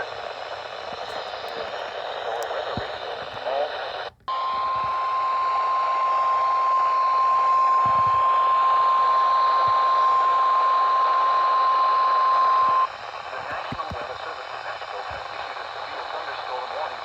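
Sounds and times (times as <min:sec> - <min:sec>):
radio static: 0:00.0 - 0:17.0
steady high-pitched alarm tone: 0:04.3 - 0:13.1.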